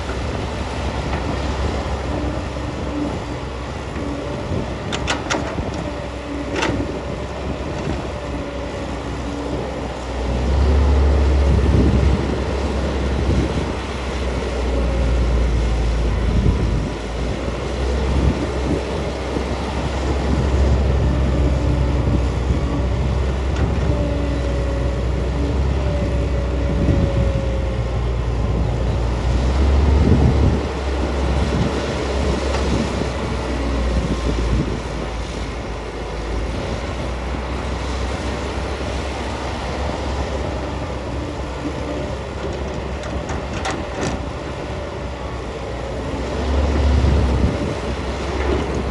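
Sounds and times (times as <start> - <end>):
excavator engine rumbling: 0.0 - 48.9.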